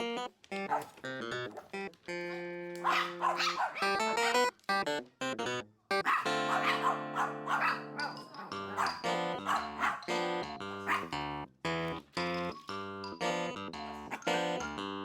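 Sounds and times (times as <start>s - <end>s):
plucked string music: 0.0s - 15.0s
small dog yapping: 0.7s - 1.8s, 2.8s - 4.5s, 6.0s - 10.1s, 10.9s - 11.1s, 14.1s - 14.4s.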